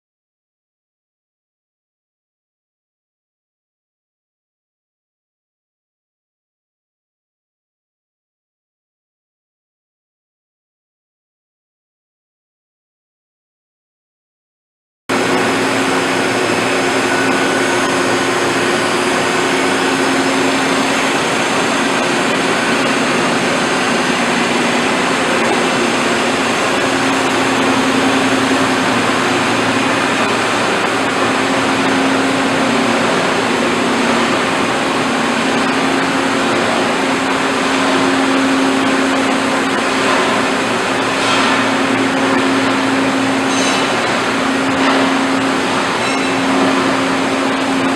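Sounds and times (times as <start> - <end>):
boring mill humming and whirring: 15.1 - 47.9.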